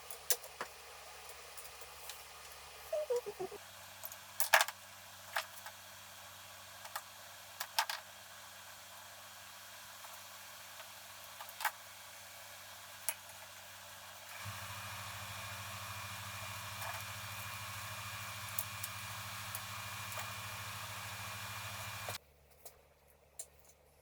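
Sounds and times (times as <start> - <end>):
steady low hum: 14.3 - 22.2.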